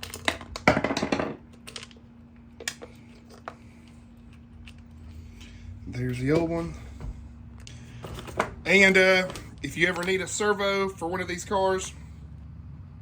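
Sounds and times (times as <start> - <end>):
tools clattering on workbench: 0.0 - 1.9, 8.0 - 10.1
steady low hum: 0.0 - 13.0.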